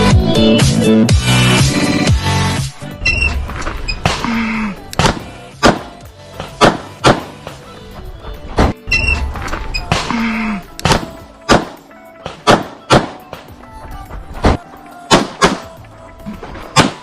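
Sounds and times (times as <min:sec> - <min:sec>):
background music: 0:00.0 - 0:17.0
handgun shots: 0:04.9 - 0:07.5, 0:10.8 - 0:13.5, 0:14.4 - 0:15.8, 0:16.8 - 0:17.0.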